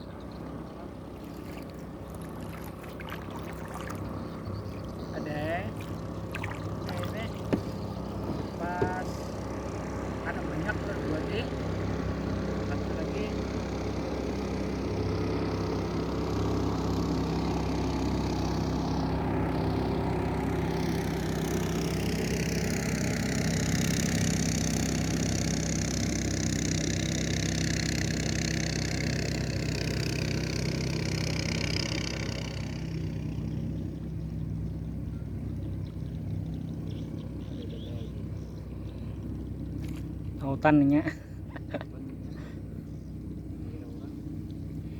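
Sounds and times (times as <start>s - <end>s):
motorboat engine running: 0.0s - 44.9s.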